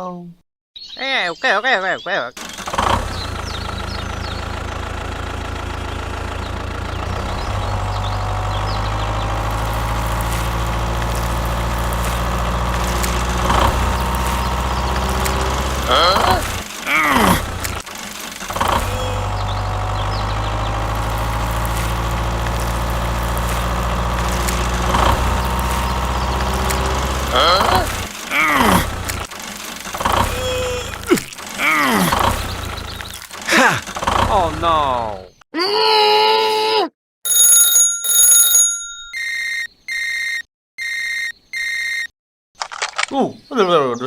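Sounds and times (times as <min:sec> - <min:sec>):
engine idling: 0:02.4 - 0:35.2.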